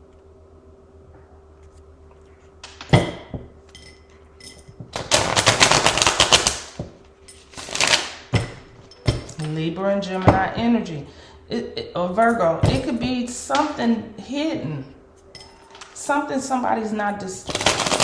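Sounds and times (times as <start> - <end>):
cards clicking while shuffled: 5.0 - 6.8.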